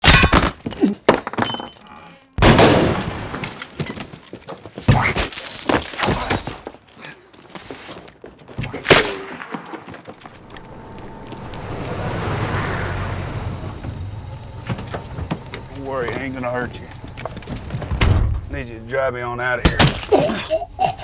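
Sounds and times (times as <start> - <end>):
sharp crashes and thuds: 19.6 - 20.6.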